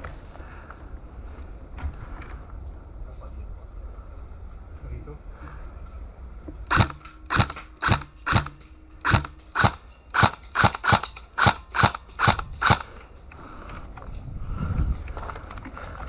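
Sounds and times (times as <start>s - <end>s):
airsoft gun firing: 6.7s - 13.0s.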